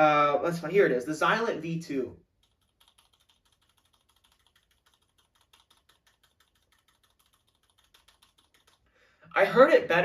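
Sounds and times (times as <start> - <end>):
faint damped keyboard clicks: 2.4 - 8.9.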